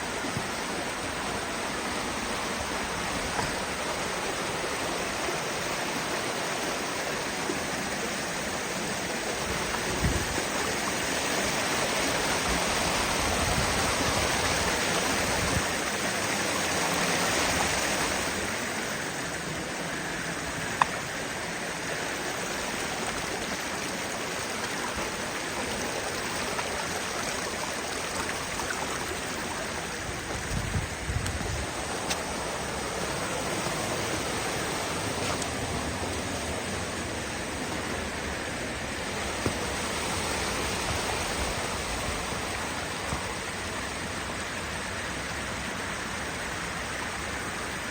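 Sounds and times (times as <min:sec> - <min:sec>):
creek running over rocks: 0:00.0 - 0:47.9.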